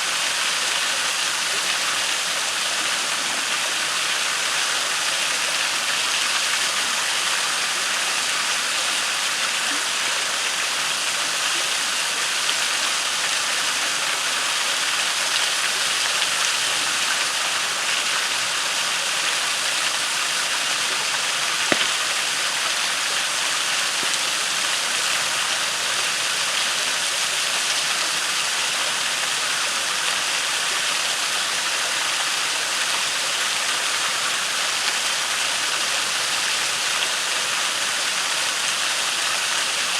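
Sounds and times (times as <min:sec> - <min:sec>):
waterfall and creek rushing: 0:00.0 - 0:39.9
campfire crackling: 0:21.2 - 0:25.0
campfire pop: 0:21.6 - 0:22.6.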